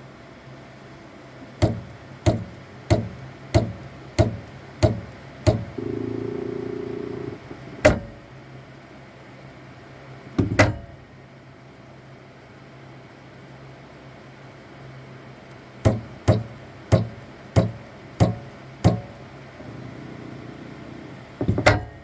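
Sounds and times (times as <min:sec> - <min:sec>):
low fan hum: 0:00.0 - 0:10.4, 0:14.9 - 0:21.7
loud knocking from printer: 0:01.6 - 0:06.2, 0:15.8 - 0:19.8, 0:21.4 - 0:22.0
motor humming: 0:05.4 - 0:08.3, 0:18.9 - 0:21.7.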